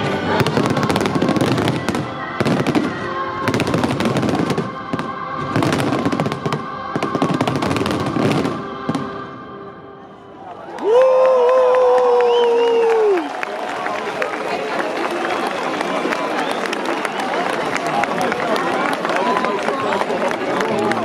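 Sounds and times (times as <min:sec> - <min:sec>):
fireworks crackling and banging: 0:00.0 - 0:09.2
music playing: 0:00.0 - 0:10.8.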